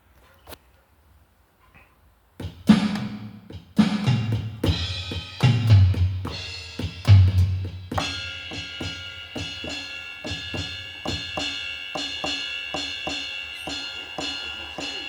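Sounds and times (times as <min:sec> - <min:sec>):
deep drum thuds: 0:02.4 - 0:09.0
ringing cymbal tones: 0:08.0 - 0:15.0.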